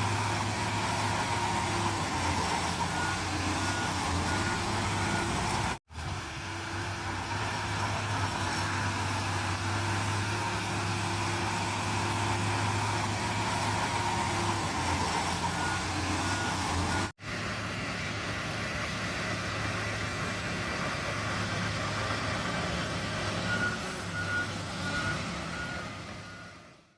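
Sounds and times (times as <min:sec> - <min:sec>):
bulldozer diesel engine running: 0:00.0 - 0:26.9
reversing alarm beeping: 0:00.9 - 0:05.8, 0:13.3 - 0:17.1, 0:21.4 - 0:26.8.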